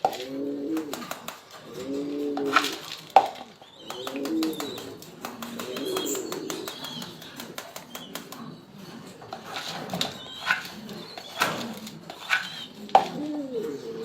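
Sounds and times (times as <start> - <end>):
wings flapping: 0.6 - 13.4
rapid patter of small clicks: 2.5 - 8.5
chicks squeaking: 3.6 - 5.0, 5.6 - 14.0.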